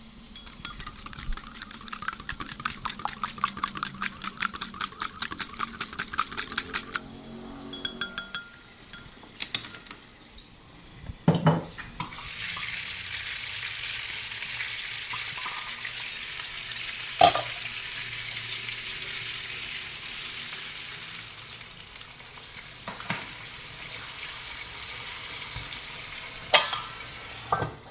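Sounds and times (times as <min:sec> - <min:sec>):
eggs sizzling in a pan: 0:12.0 - 0:27.6.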